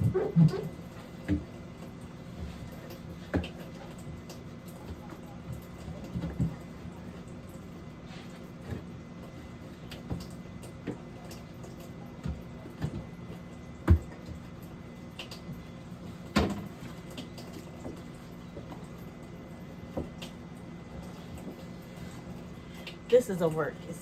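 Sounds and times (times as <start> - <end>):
containers knocking in a refrigerator: 13.8 - 14.4.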